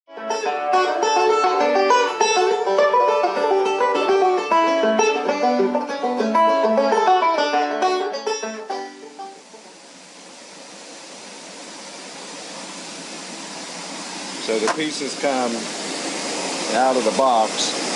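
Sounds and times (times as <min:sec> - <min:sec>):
fast plucked banjo picking: 0:00.1 - 0:09.7.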